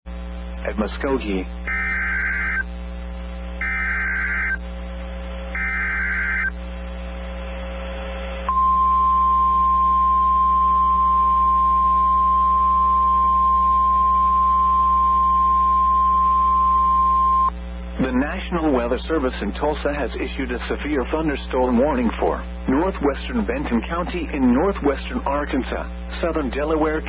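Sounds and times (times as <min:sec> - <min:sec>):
screeching data bursts: 0:01.3 - 0:02.9, 0:03.6 - 0:04.8, 0:05.5 - 0:06.6
steady alarm tone: 0:01.6 - 0:04.8, 0:05.5 - 0:06.6, 0:08.5 - 0:17.6.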